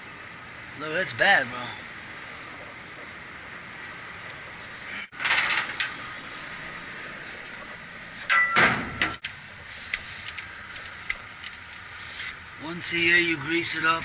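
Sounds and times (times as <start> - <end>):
steady hiss: 0.0 - 14.0
metal parts clanking: 5.2 - 6.0.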